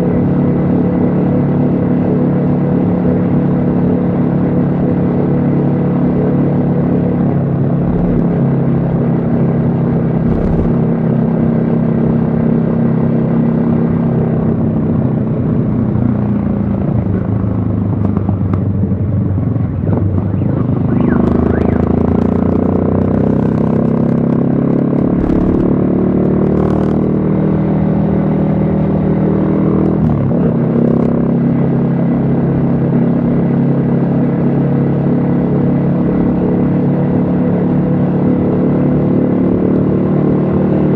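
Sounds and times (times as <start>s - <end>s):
motorcycle engine revving: 7.1s - 11.6s, 17.8s - 32.0s.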